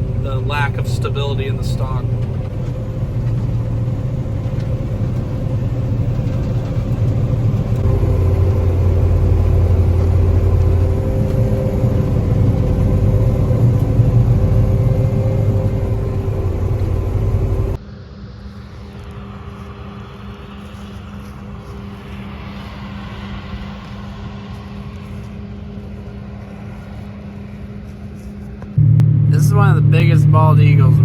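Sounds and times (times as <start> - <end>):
combine harvester rumbling: 0.0 - 17.8, 28.8 - 31.0.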